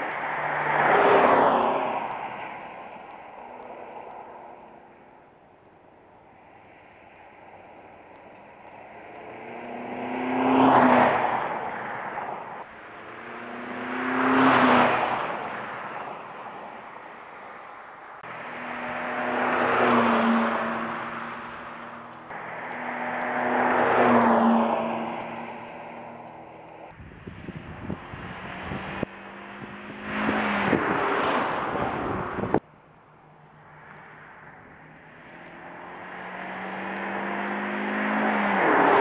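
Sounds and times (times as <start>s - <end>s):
car engine driving past: 13.0s - 16.1s, 18.3s - 26.7s.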